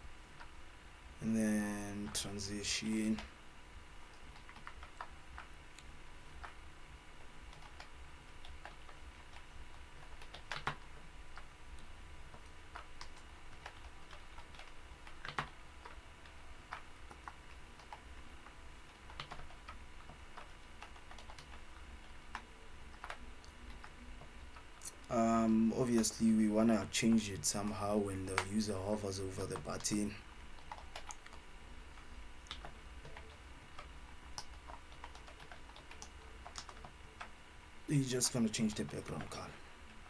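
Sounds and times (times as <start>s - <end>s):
faint low hum: 0.0s - 40.0s
computer keyboard typing: 4.1s - 6.6s, 7.5s - 18.3s, 18.9s - 37.3s, 38.2s - 39.5s.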